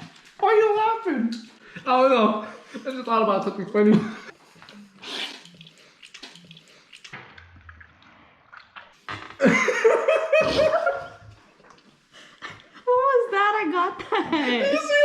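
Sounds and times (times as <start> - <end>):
slurping soup: 4.2 - 9.4
person laughing with mouthful: 9.3 - 11.2.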